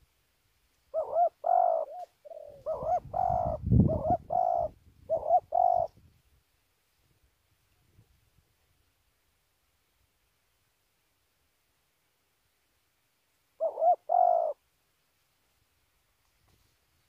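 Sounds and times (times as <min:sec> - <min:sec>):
dove cooing: 0:00.9 - 0:06.0, 0:13.6 - 0:14.6.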